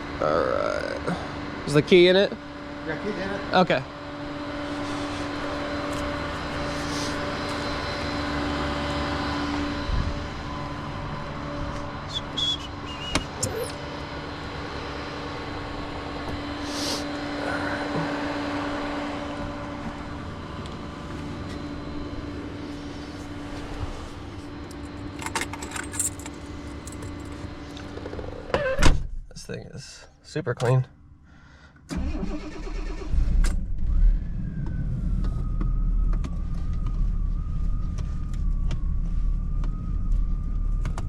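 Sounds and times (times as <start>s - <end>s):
vehicle engine running: 0.0s - 28.5s.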